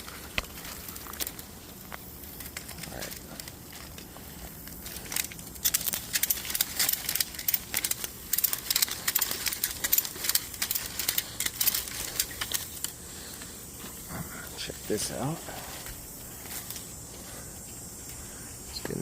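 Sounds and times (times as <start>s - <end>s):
ratchet strap tightening: 0.0s - 13.5s
dry sticks crackling and snapping: 0.0s - 19.0s.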